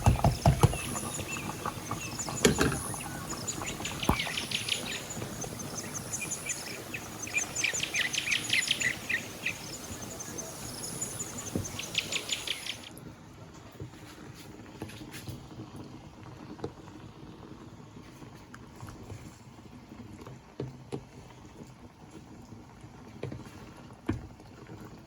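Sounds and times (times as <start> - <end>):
utensil knocking against pot: 0.0 - 5.4
soup bubbling in pot: 0.0 - 12.9.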